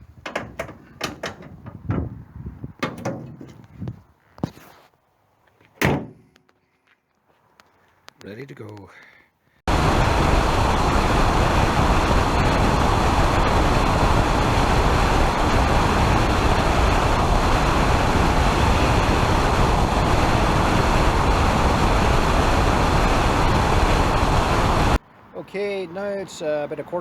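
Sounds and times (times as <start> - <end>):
car road and wind noise: 0.0 - 4.6, 5.7 - 6.4, 9.7 - 25.8.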